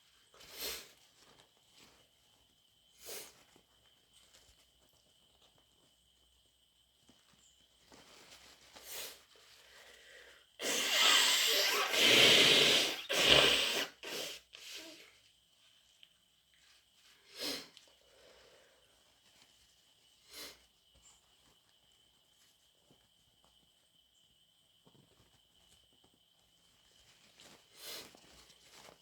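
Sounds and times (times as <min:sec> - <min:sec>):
person sniffing: 0:10.0 - 0:15.1, 0:17.3 - 0:18.4
person blowing nose: 0:10.6 - 0:15.1, 0:17.4 - 0:17.7.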